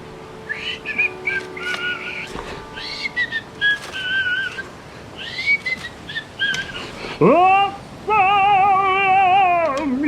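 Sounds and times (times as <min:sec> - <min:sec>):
person whistling a tune: 0:00.5 - 0:06.8.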